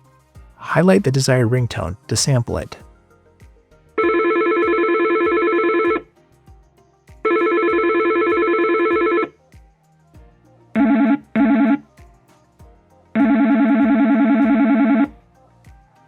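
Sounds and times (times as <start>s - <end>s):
trilling phone ring: 4.0s - 6.0s, 7.3s - 9.3s, 10.8s - 11.8s, 13.2s - 15.1s
lower phone ringtone: 4.0s - 6.1s, 7.3s - 9.3s, 10.8s - 11.8s, 13.2s - 15.1s.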